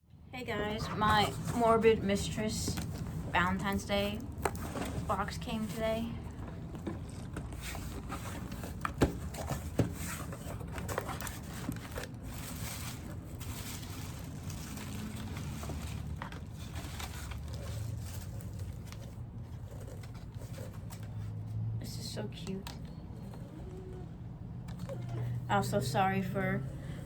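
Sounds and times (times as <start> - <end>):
packaging rustling and crinkling: 0.7 - 21.5.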